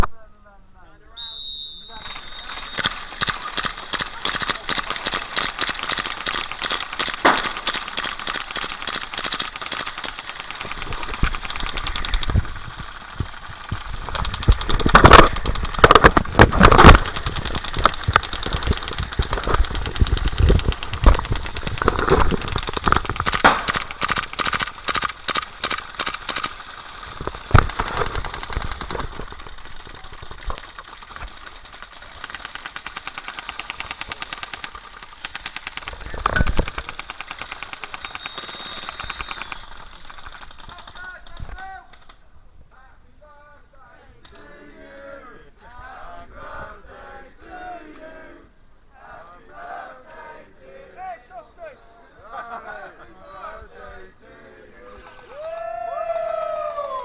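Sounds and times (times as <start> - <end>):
airsoft guns firing bursts: 1.9 - 42.2
loud bangs: 2.2 - 30.1.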